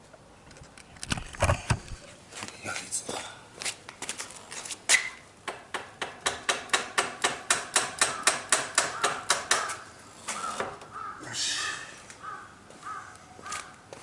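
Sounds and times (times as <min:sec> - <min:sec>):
sharp metallic taps: 0:05.4 - 0:09.8.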